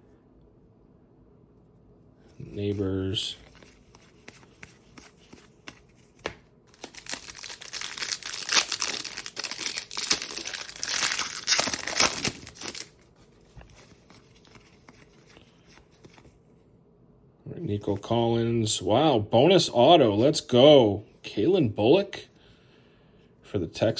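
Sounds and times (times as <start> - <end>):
wrapper tearing and crinkling: 6.7 - 13.0.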